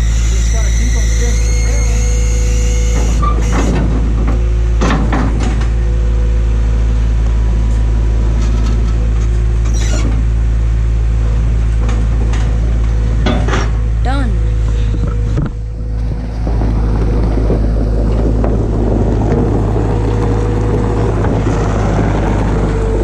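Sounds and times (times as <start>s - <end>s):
vehicle engine running: 0.0s - 23.0s
heavy metal knocks and clanks: 2.9s - 5.9s, 11.7s - 14.0s, 14.6s - 22.4s.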